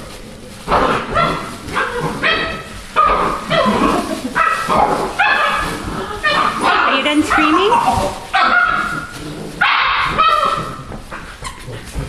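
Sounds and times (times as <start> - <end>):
puppies whimpering and yipping: 1.0 - 12.0.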